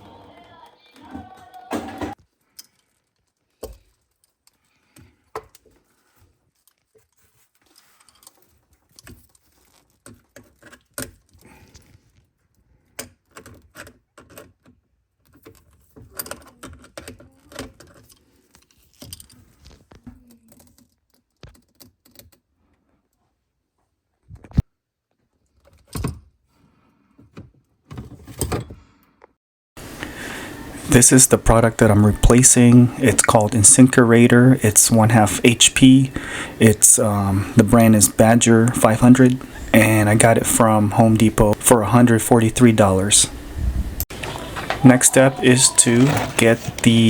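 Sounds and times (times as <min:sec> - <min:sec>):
clatter of plumbing fittings and tools: 0:01.7 - 0:12.2, 0:27.1 - 0:29.0.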